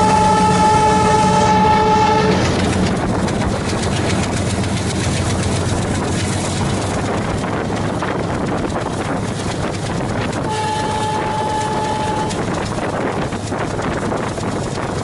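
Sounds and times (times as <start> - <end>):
locomotive air horn: 0.0 - 2.6, 10.4 - 12.6
locomotive engine low drone: 0.0 - 15.0
train wheels clicking over rail joints: 0.0 - 15.0.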